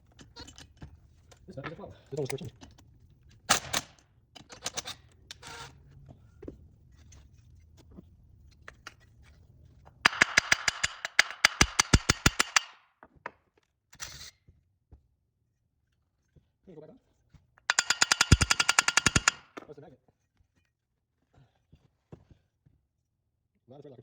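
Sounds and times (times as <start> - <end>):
hand ratchet clicking rapidly: 10.1 - 12.8, 17.7 - 19.5.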